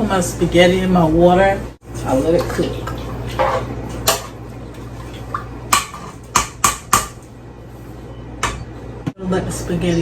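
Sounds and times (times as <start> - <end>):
cookware and utensils clinking: 2.0 - 4.4.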